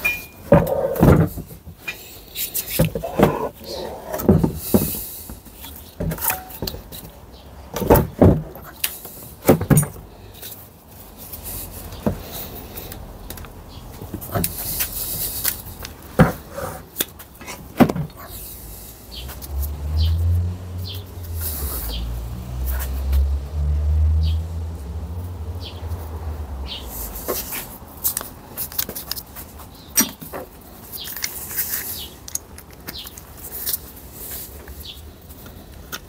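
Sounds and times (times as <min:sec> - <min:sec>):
metal tools and parts clinking: 0:00.0 - 0:05.0, 0:06.0 - 0:07.1, 0:07.8 - 0:10.6.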